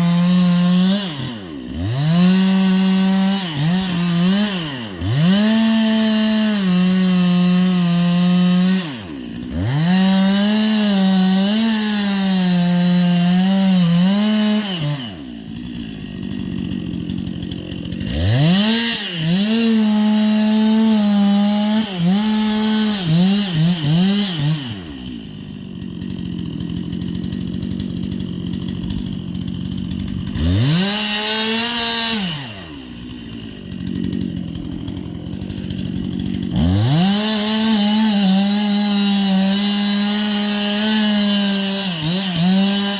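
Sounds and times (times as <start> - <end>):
chainsaw cutting wood: 0.0 - 42.9.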